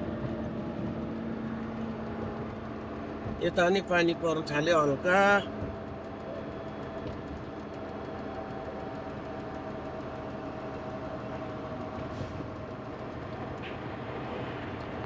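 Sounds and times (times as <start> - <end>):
road noise: 0.0 - 15.0
truck engine drone: 0.0 - 15.0.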